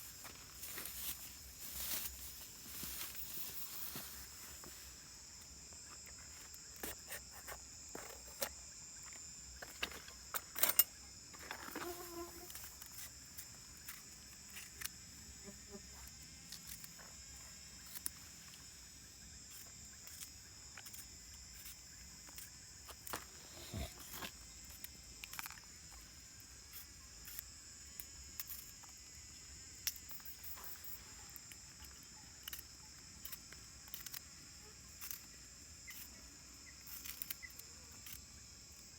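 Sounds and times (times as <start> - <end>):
insects chirring: 0.0 - 38.9.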